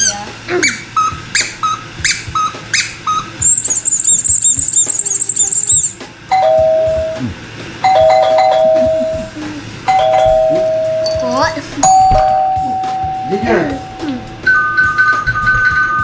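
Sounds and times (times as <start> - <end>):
high warbling trill: 0.0 - 16.0
doorbell ding-dong chime: 6.3 - 7.2, 7.8 - 9.2, 9.9 - 16.0.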